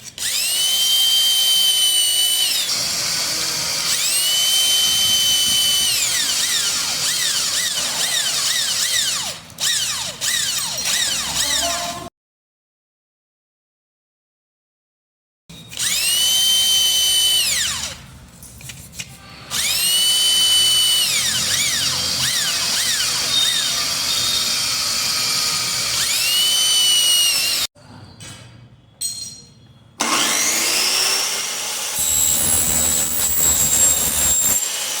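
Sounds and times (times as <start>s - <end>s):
power tool motor whining: 19.5s - 27.7s, 30.0s - 35.0s.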